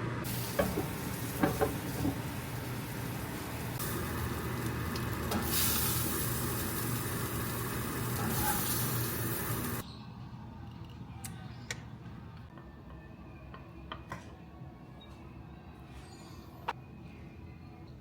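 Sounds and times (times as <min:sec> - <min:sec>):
food sizzling in a hot pan: 0:00.3 - 0:09.8.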